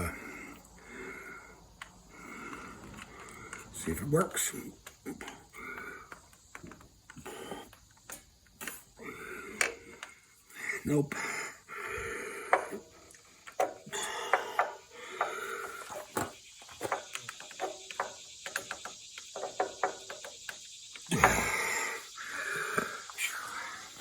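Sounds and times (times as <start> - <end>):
clamp clicking and knocking: 16.1 - 21.6.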